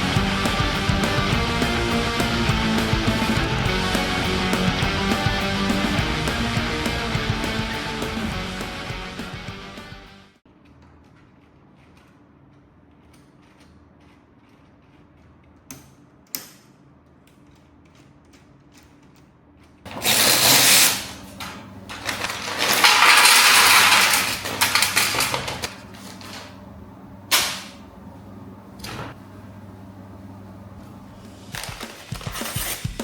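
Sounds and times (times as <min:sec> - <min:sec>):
packaging rustling: 0:21.9 - 0:26.6, 0:31.3 - 0:33.0
packaging clicks: 0:31.4 - 0:33.0.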